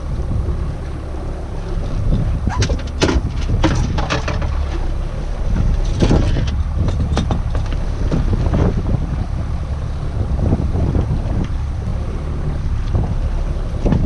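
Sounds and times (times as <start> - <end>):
wind buffeting microphone: 0.0 - 14.0
knocks on boat: 2.5 - 4.8.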